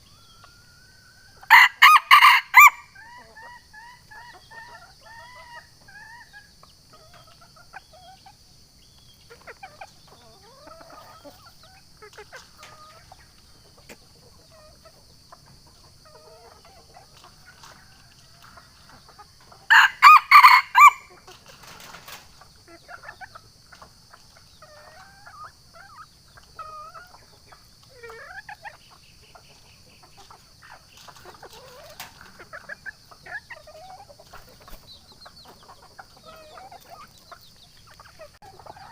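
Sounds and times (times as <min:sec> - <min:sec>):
steady high-pitched hiss: 0:00.0 - 0:38.9
rooster crowing: 0:00.6 - 0:03.0, 0:19.7 - 0:21.1
faint clucks: 0:03.2 - 0:19.7.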